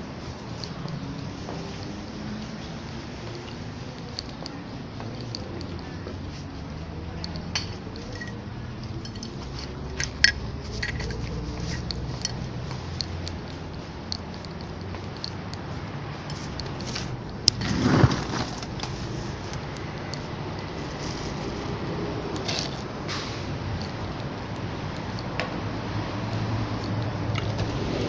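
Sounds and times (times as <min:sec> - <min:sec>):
dishes and utensils clinking: 0:07.3 - 0:12.5.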